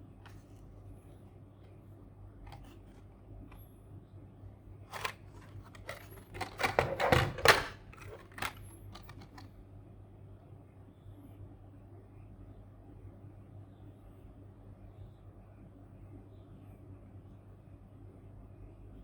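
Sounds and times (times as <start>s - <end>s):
plastic and card rustling: 0.2s - 0.7s, 2.4s - 3.6s, 4.9s - 9.5s
light clicks of packaging: 4.9s - 9.5s.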